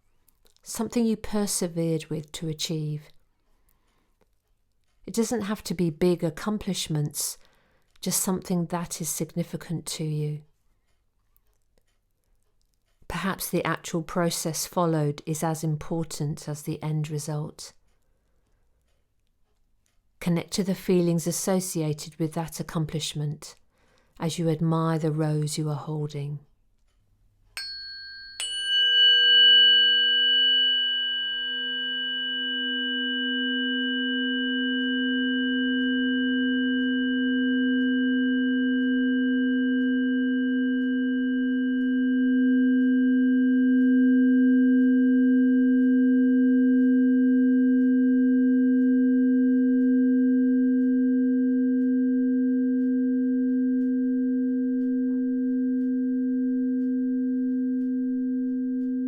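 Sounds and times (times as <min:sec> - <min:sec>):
singing bowl ringing: 0:27.6 - 0:59.0.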